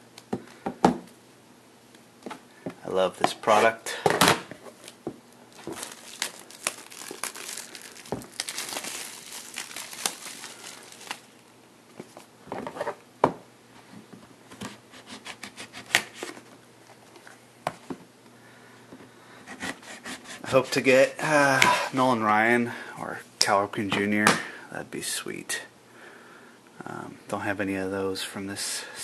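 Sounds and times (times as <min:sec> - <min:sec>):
plastic wrapping crinkling: 0:04.7 - 0:12.3.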